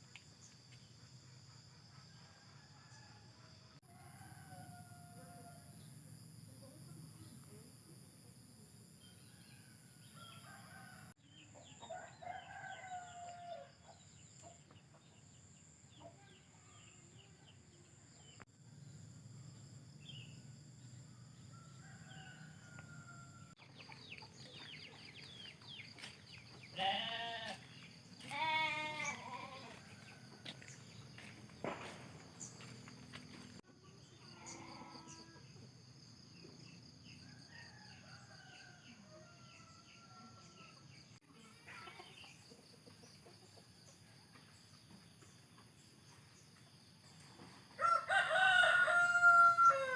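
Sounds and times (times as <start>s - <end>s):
insects droning: 0.0s - 49.9s
goats bleating: 26.8s - 29.9s.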